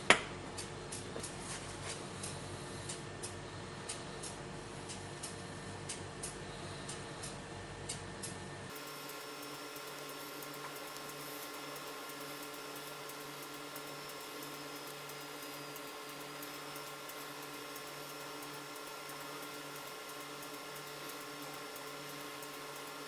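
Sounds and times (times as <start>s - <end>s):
small electric motor humming: 8.7s - 23.0s.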